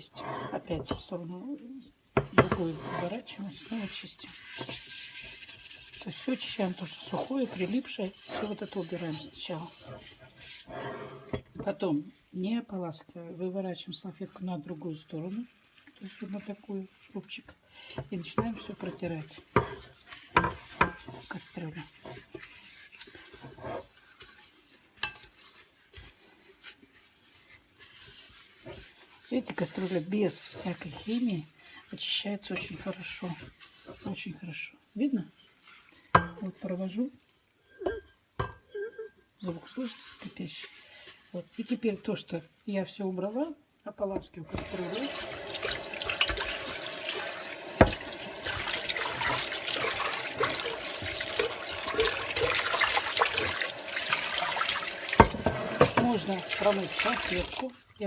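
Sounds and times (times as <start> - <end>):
cloth rubbing inside metal pot: 0.0 - 58.0
pot clinking and knocking: 37.8 - 38.7, 44.6 - 57.6
tap water splashing: 44.5 - 57.9.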